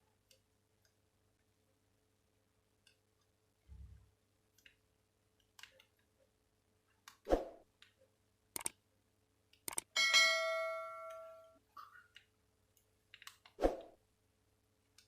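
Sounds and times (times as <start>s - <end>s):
short clicks: 8.6s - 8.8s, 9.6s - 9.9s
bell-like phone chime: 10.0s - 11.6s.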